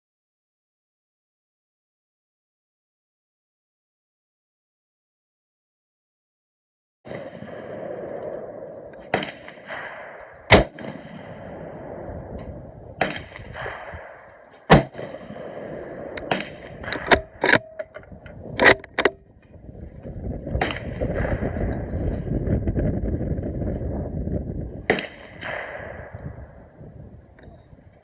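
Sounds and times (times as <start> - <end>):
gunshots: 7.1 - 12.3, 13.0 - 17.7, 18.6 - 19.2, 24.9 - 26.6.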